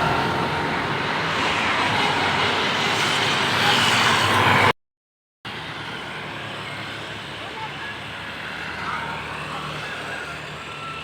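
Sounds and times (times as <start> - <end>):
road vehicle passing: 0.0 - 4.7.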